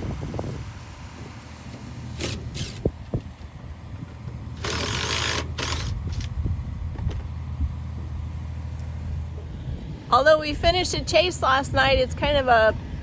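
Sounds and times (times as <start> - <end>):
compressed air blow gun blasts: 0.0 - 7.0
engine running: 0.0 - 13.0.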